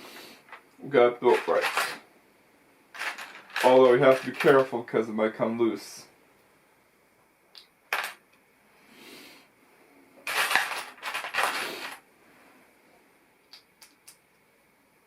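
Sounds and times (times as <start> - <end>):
plastic pieces rattling: 1.3 - 2.0, 3.0 - 4.7, 7.9 - 8.2, 10.2 - 12.0
plastic bricks clicking: 7.9 - 8.2, 10.3 - 12.0.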